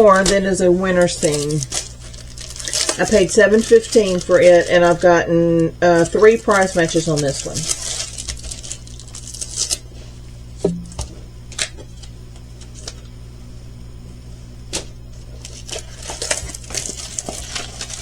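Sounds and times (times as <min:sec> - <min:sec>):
plastic packaging crinkling: 0:00.0 - 0:10.2, 0:14.7 - 0:18.0.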